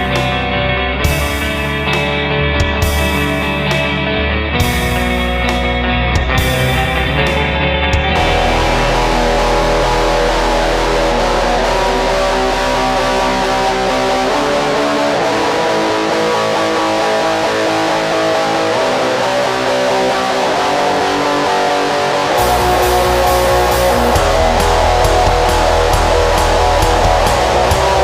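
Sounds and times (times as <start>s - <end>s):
electric guitars strummed and ringing: 0.0s - 28.0s
low bass note: 8.1s - 15.0s, 22.4s - 28.0s.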